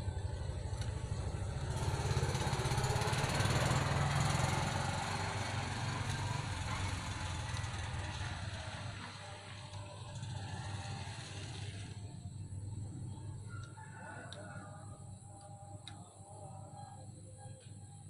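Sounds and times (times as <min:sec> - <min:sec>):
small engine running: 0:00.0 - 0:13.5.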